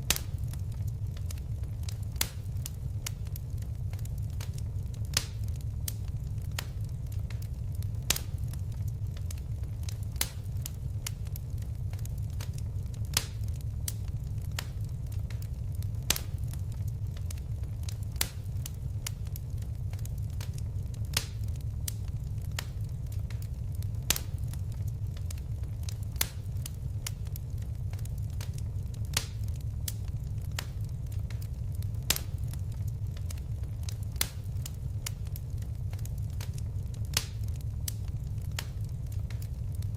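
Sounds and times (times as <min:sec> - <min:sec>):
fire crackling: 0:00.0 - 0:39.9.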